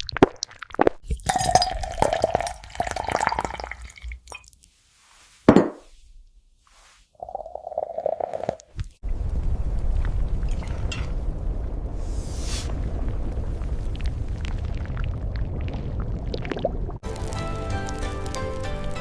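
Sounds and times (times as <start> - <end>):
tableware clinking: 5.5 - 5.8
low rumble: 9.0 - 17.4.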